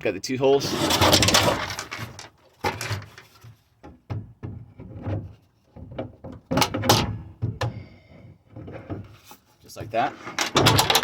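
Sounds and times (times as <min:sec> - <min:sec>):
toolbox knocks and clunks: 0:00.8 - 0:07.9, 0:10.3 - 0:11.0.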